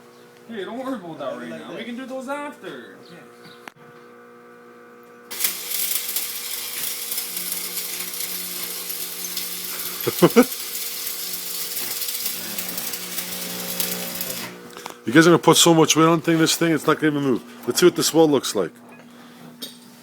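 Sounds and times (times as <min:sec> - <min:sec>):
electrical hum: 0:00.0 - 0:20.0
welding arc crackling: 0:05.3 - 0:17.0.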